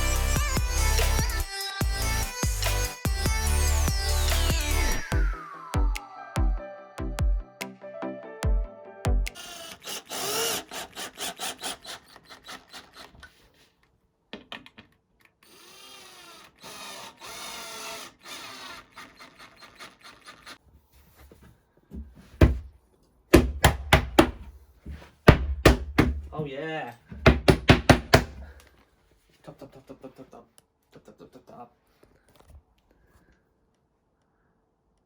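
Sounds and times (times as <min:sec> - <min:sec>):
cordless drill driving screws: 0:09.4 - 0:13.5, 0:15.4 - 0:20.6
knocks on wood: 0:22.0 - 0:22.7, 0:23.4 - 0:24.5, 0:25.3 - 0:26.3, 0:27.2 - 0:28.4.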